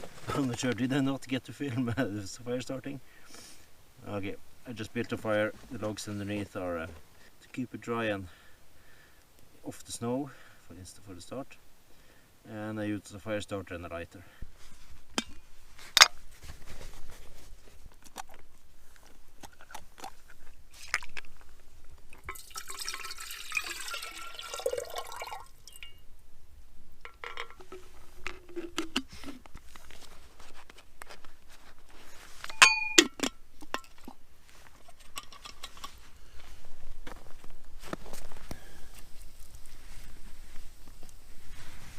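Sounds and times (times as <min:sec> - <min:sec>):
metal pot clinking: 0:22.2 - 0:26.0, 0:27.1 - 0:29.0, 0:32.5 - 0:34.0, 0:35.0 - 0:35.9
water poured into metal pot: 0:22.2 - 0:26.0.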